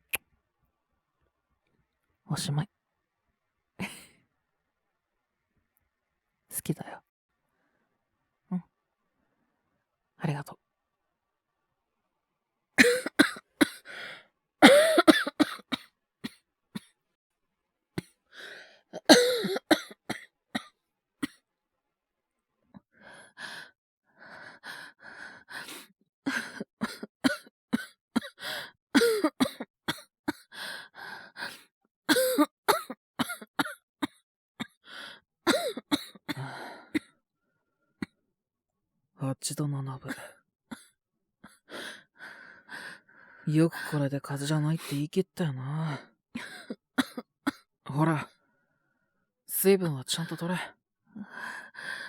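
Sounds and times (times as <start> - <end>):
man coughing: 12.8 - 13.8, 14.6 - 15.8, 19.0 - 20.0, 32.1 - 33.8, 35.5 - 36.4.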